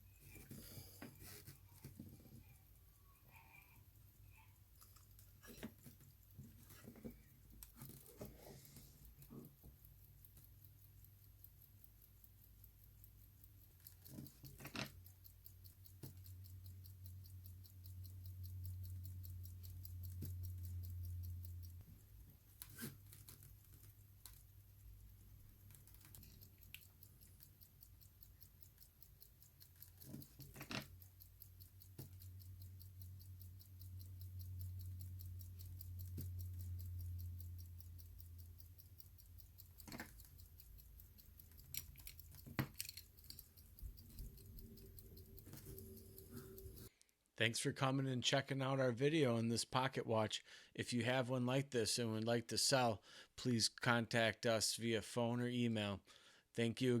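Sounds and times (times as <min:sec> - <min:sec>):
pocket watch ticking fast: 0:00.0 - 0:46.9
faint low hum: 0:15.0 - 0:46.9.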